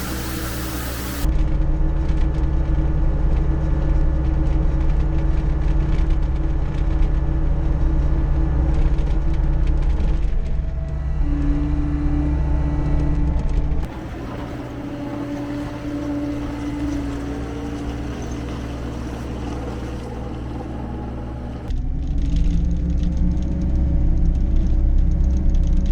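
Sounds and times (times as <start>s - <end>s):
diesel engine running: 0.0s - 1.3s, 13.8s - 24.3s.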